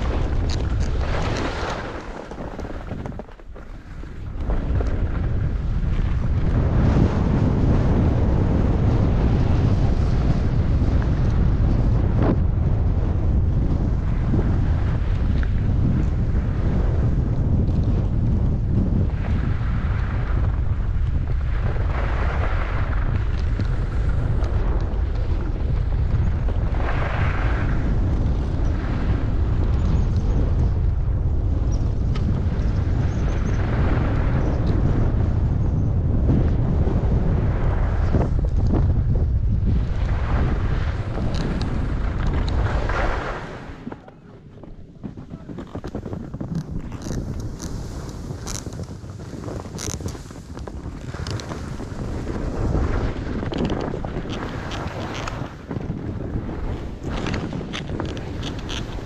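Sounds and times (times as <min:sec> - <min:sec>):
skis sliding on snow: 0:00.0 - 0:12.2, 0:19.0 - 0:30.2, 0:39.7 - 0:59.0
wind buffeting microphone: 0:00.0 - 0:59.0.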